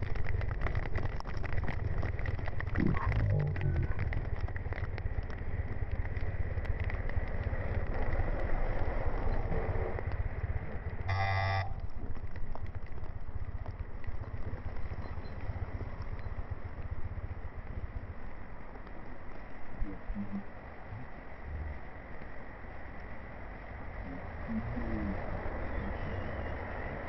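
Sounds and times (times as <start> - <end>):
moving vehicle rumbling: 0.0 - 27.0
brief pitched blare: 11.1 - 11.8.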